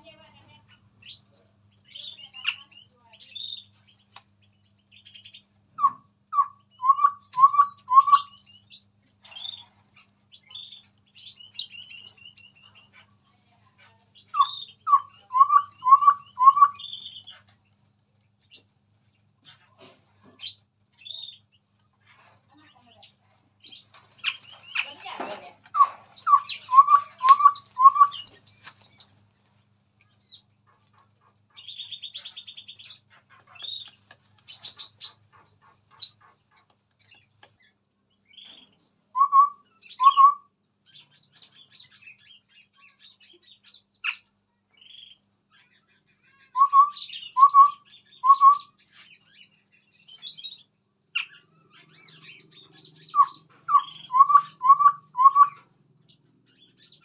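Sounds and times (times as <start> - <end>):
bird chirps: 0.0 - 57.0
bird whistling song: 5.0 - 9.6, 14.1 - 17.6, 25.7 - 29.1, 38.0 - 44.2, 46.3 - 55.7.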